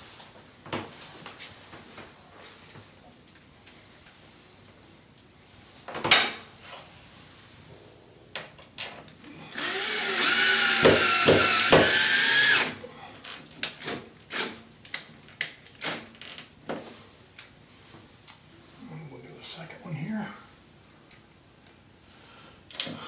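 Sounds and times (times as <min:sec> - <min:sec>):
screw gun whining: 0:09.5 - 0:12.8.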